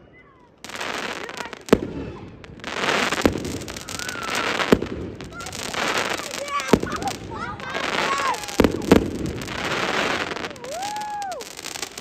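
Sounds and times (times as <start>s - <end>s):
fireworks crackling: 0.5s - 12.0s
fireworks bangs: 0.6s - 12.0s.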